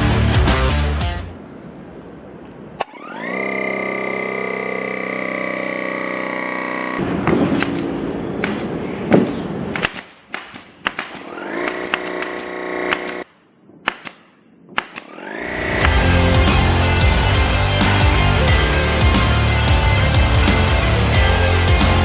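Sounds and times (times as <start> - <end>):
air compressor running: 2.9 - 7.1, 11.2 - 13.2, 15.2 - 22.0.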